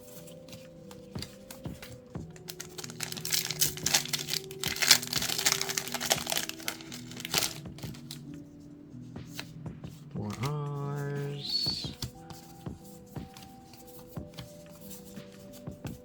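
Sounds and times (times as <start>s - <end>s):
faint background music: 0.0s - 16.0s
plastic wrapper crinkling: 1.4s - 8.3s.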